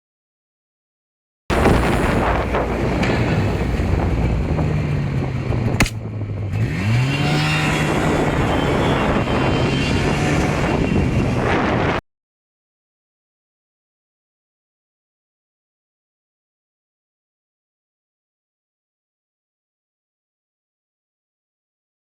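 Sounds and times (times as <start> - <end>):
wind on microphone: 1.5 - 12.0
sharp click: 5.8 - 6.0.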